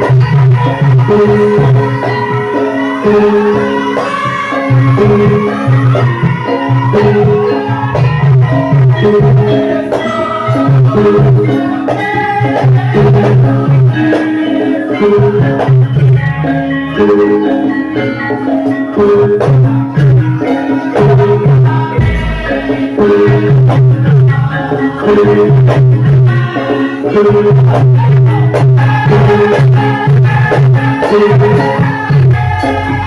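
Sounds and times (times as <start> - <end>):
tuned struck percussion ringing: 15.0 - 26.1
low drummed beat: 21.2 - 24.6.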